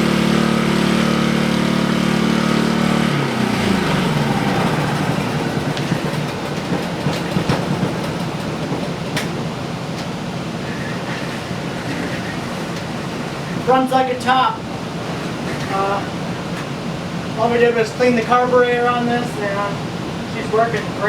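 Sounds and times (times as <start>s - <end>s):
snowblower engine running: 0.0s - 12.5s.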